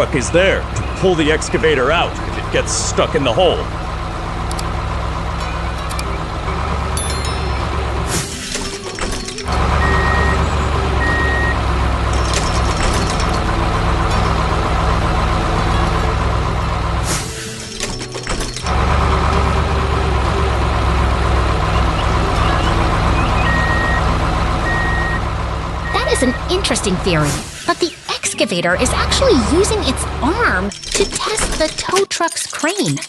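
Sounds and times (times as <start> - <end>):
heavy machine engine running: 0.0 - 32.0
high reversing beeps: 9.7 - 11.6, 21.7 - 26.6.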